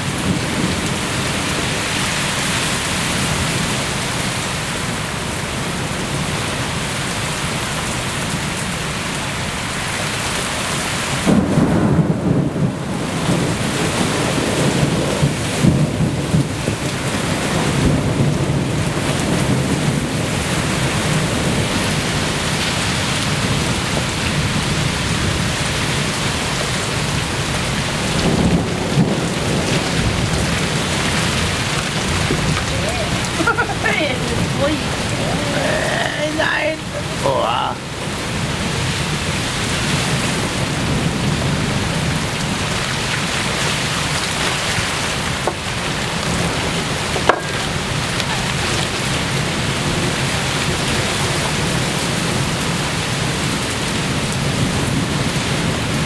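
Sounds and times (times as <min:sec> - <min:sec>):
steady heavy rain: 0:00.0 - 0:56.0
thunder rumbling: 0:27.0 - 0:35.4.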